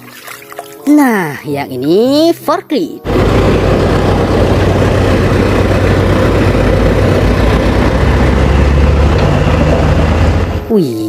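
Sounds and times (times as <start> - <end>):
motor humming and hissing: 3.1 - 10.6.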